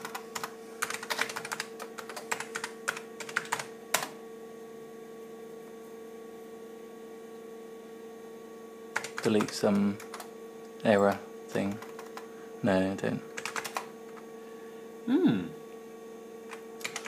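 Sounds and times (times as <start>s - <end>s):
computer hum: 0.0s - 17.0s
keyboard keys clacking: 13.4s - 13.8s.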